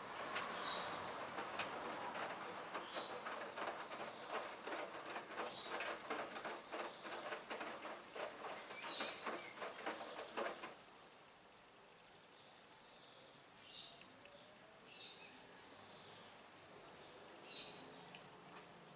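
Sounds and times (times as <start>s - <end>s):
washing machine drum sloshing: 0.0s - 10.8s
low steady noise: 0.0s - 18.9s
high squeaks: 0.5s - 10.8s.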